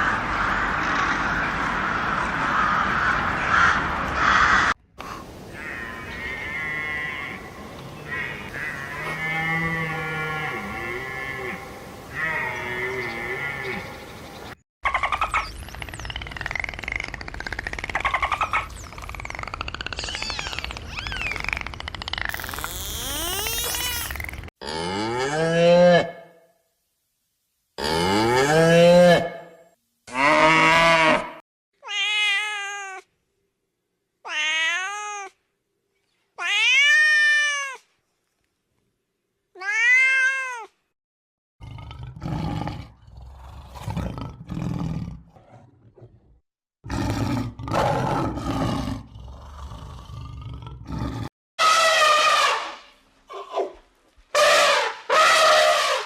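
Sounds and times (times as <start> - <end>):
cat meowing: 31.8 - 33.0, 34.2 - 35.4, 36.4 - 37.8, 39.6 - 40.8.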